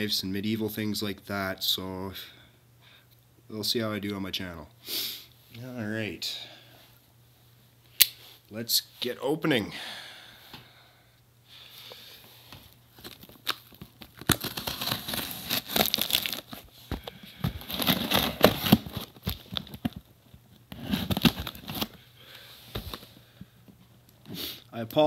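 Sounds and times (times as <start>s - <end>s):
packaging torn and crumpled: 12.9s - 20.1s, 20.7s - 22.0s.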